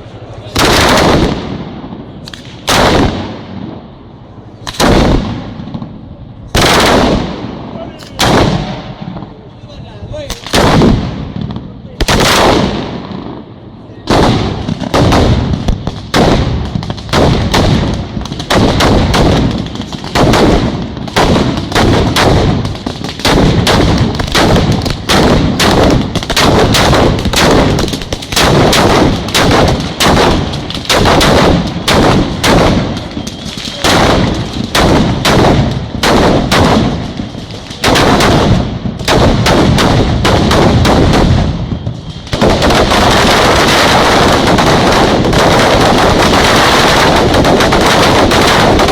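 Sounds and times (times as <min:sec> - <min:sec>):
fireworks bangs crackling: 0:10.1 - 0:13.1, 0:14.1 - 0:48.9.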